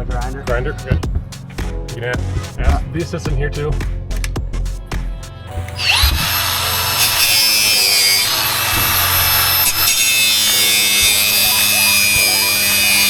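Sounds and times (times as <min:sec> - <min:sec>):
angle grinder whining: 0:05.5 - 0:13.0.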